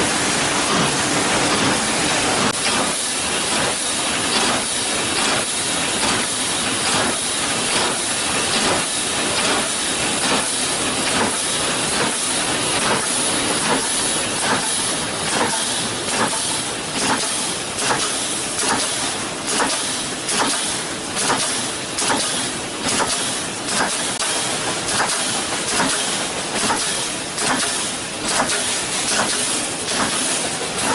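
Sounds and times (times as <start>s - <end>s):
welding strokes clacking: 12.8s - 30.9s.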